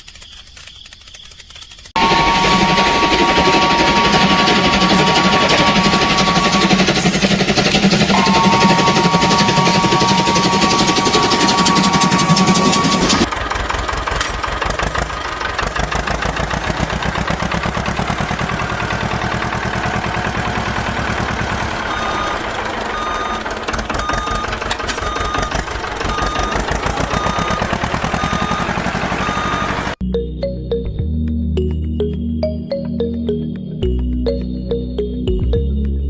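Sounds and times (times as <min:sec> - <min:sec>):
reversing beeper: 0:02.0 - 0:13.5, 0:16.2 - 0:30.3
heavy vehicle engine chugging: 0:02.0 - 0:30.0.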